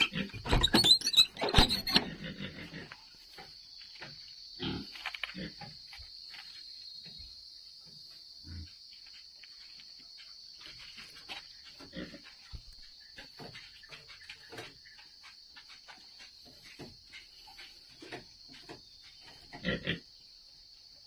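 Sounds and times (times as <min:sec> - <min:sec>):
pigs grunting: 0:00.0 - 0:03.2, 0:04.6 - 0:05.7, 0:11.7 - 0:12.6, 0:19.2 - 0:20.2.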